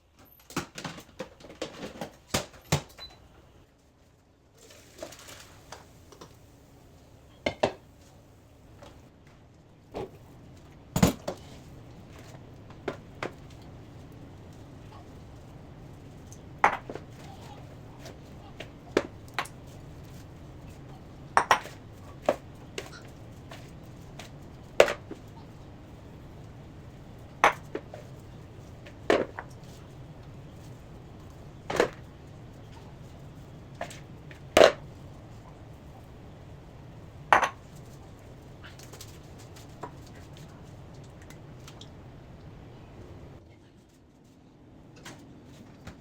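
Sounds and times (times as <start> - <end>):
steady low hum: 5.7 - 46.0
dishes clinking: 21.4 - 21.8.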